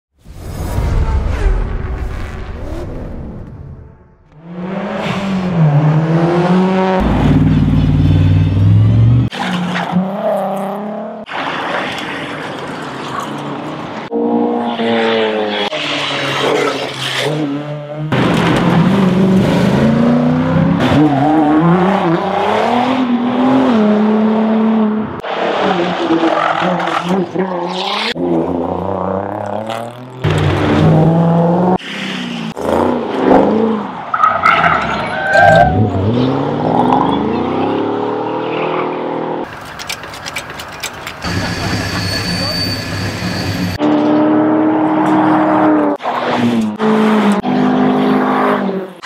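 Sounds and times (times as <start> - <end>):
rally car engines revving: 4.3 - 41.5, 43.7 - 49.0
sharp clicks: 39.5 - 41.3.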